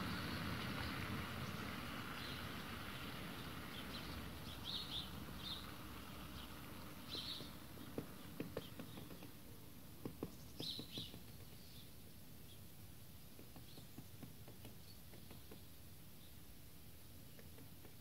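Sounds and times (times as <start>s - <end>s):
high bird chirps: 6.3s - 7.6s
woodpecker pecking at wood: 7.0s - 11.6s, 13.2s - 15.8s, 17.2s - 18.0s.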